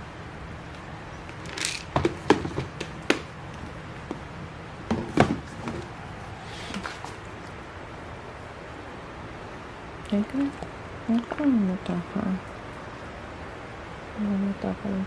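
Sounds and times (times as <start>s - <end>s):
sharp knocks and clicks: 1.2s - 4.2s.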